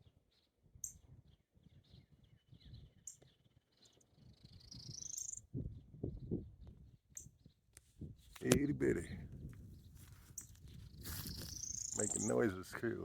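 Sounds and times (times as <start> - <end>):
hummingbird chips and twitter: 4.6 - 5.4, 10.4 - 12.7.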